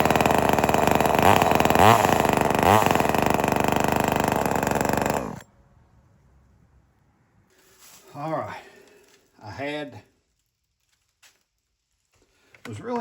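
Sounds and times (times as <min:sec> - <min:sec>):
chainsaw engine running high: 0:00.0 - 0:05.4.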